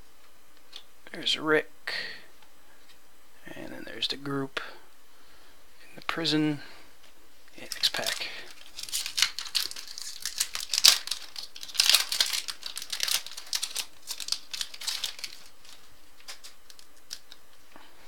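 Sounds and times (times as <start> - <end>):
wrapper tearing and crinkling: 7.6 - 17.4.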